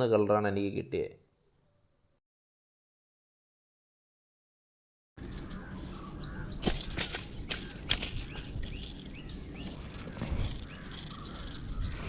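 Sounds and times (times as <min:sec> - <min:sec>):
small birds chirping: 0:05.2 - 0:12.0.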